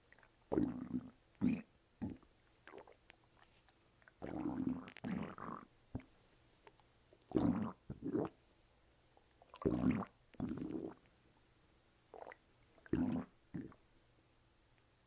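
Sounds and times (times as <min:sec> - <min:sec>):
stomach gurgling: 0:00.1 - 0:06.1, 0:07.2 - 0:08.4, 0:09.4 - 0:11.1, 0:12.1 - 0:13.8.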